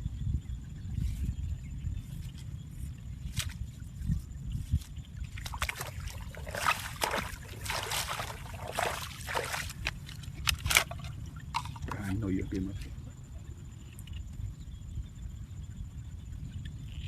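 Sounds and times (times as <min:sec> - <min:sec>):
steady low rumble: 0:00.0 - 0:17.0
water splashing: 0:05.2 - 0:12.1.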